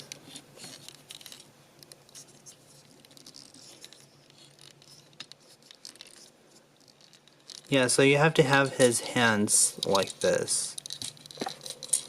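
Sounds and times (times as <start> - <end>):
plastic toy parts clicking: 9.8 - 12.0.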